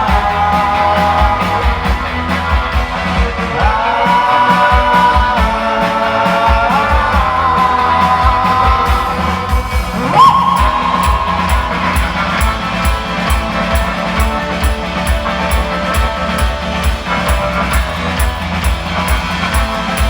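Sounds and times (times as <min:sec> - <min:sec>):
pop-rock band playing: 0:00.0 - 0:20.0
sliding held melody line: 0:10.5 - 0:20.0
kick drum beat: 0:10.6 - 0:20.0.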